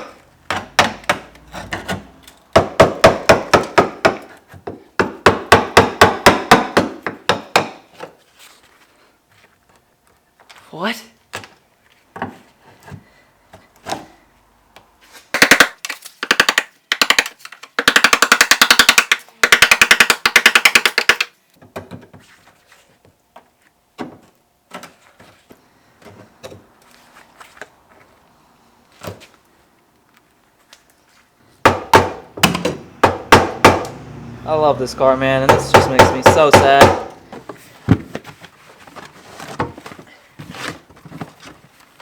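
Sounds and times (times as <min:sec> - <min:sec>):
pneumatic air chisel hammering: 0:35.4 - 0:37.2.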